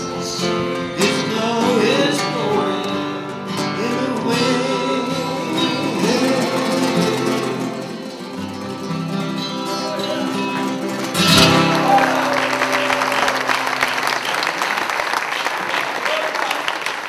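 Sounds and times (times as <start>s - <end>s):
person singing: 0.0s - 13.4s
acoustic guitars playing: 0.0s - 15.5s.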